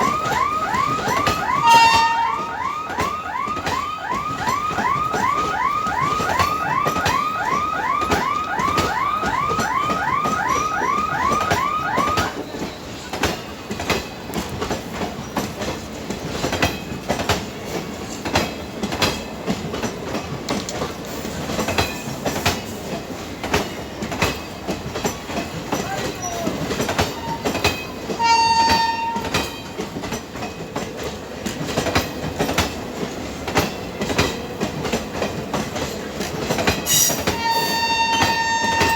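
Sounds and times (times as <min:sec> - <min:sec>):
warbling electronic siren: 0:00.0 - 0:12.4
train wheels clicking over rails: 0:00.0 - 0:38.9
train horn blast: 0:01.5 - 0:02.7, 0:28.2 - 0:29.4, 0:36.9 - 0:38.9.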